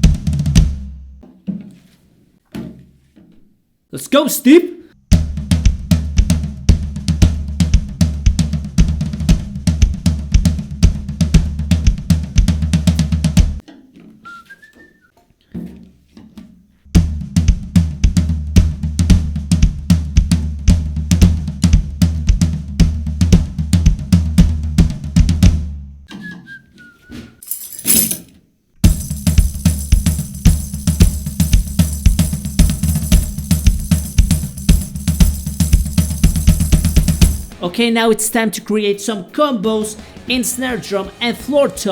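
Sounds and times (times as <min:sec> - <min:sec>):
drum kit groove: 0:00.0 - 0:01.2, 0:05.1 - 0:13.6, 0:17.0 - 0:25.8, 0:28.8 - 0:38.4, 0:39.6 - 0:41.9
cymbals: 0:28.8 - 0:37.7.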